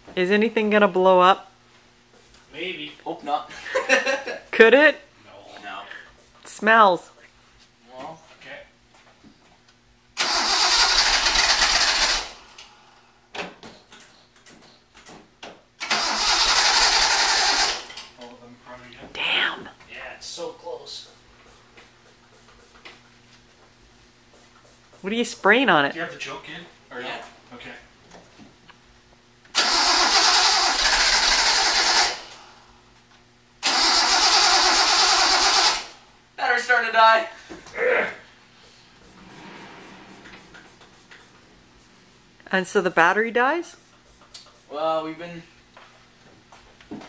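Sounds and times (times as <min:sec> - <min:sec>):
car engine cranking: 0:10.2 - 0:12.4, 0:15.8 - 0:17.9, 0:29.5 - 0:32.4, 0:33.6 - 0:35.9.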